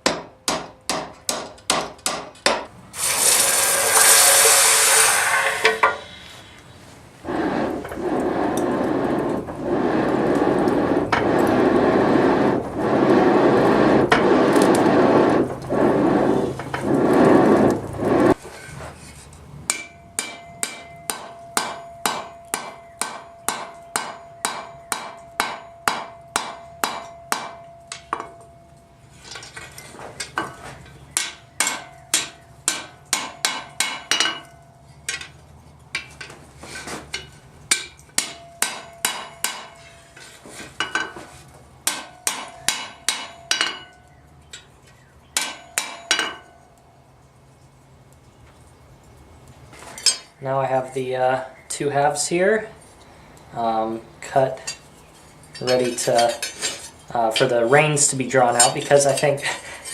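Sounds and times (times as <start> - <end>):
hammer striking steel on anvil: 0.0 - 2.7, 19.7 - 28.5, 31.2 - 34.5, 37.1 - 39.9, 41.8 - 44.0, 45.4 - 46.5.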